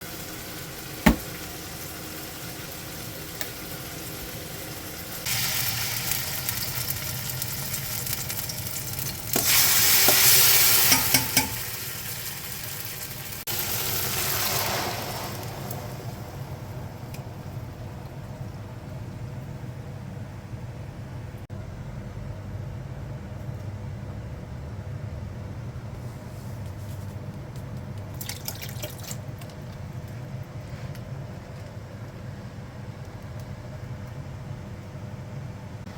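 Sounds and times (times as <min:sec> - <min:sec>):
food sizzling in a frying pan: 0:00.0 - 0:17.0
utensil knocking down: 0:01.0 - 0:01.5.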